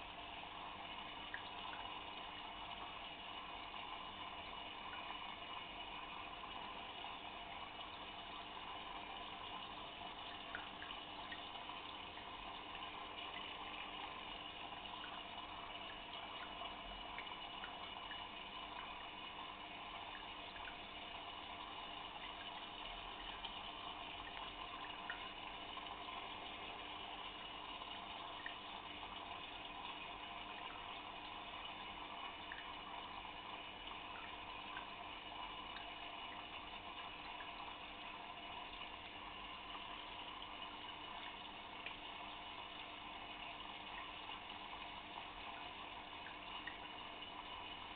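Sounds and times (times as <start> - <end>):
aquarium water bubbling: 0.0 - 47.9.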